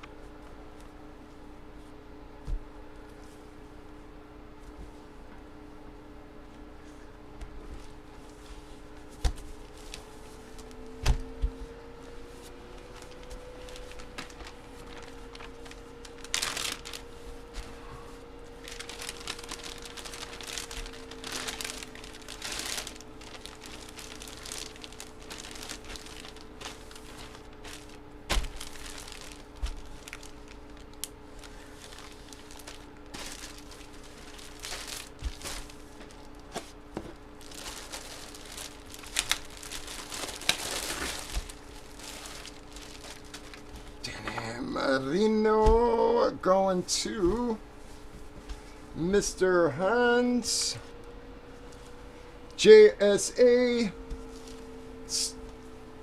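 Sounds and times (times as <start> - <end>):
faint steady hum: 0.0 - 56.0
plastic wrapping crinkling and tearing: 12.5 - 17.6, 18.5 - 44.1.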